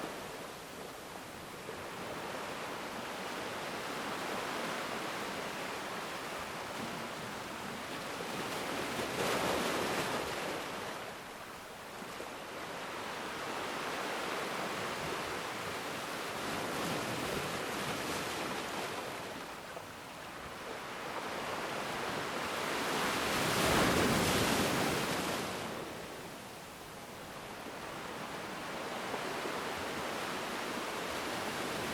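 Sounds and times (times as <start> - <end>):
ocean waves breaking on shore: 0.0 - 31.9.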